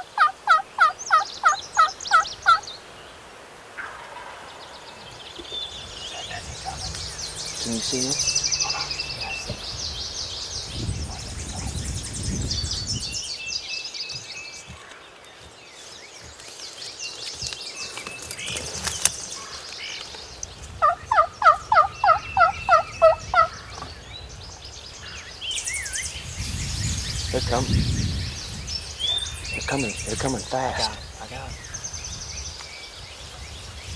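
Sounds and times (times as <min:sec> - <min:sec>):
turkey yelps: 0:00.0 - 0:02.6, 0:08.4 - 0:09.6, 0:20.8 - 0:23.6
songbirds chirping: 0:00.0 - 0:33.9.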